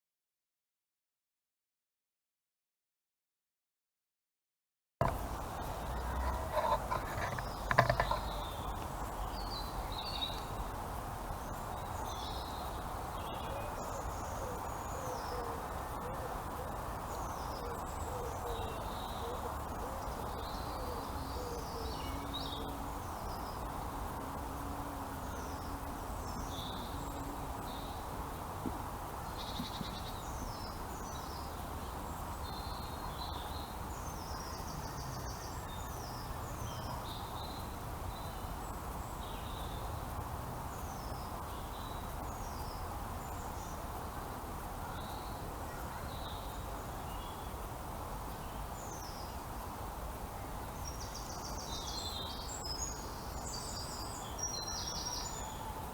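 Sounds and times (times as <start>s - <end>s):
birds chirping and singing: 5.0s - 10.6s.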